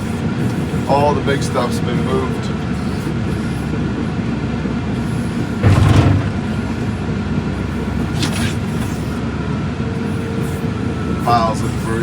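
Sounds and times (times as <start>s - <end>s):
vehicle engine and road noise: 0.0s - 12.0s
vehicle bump: 4.8s - 9.2s.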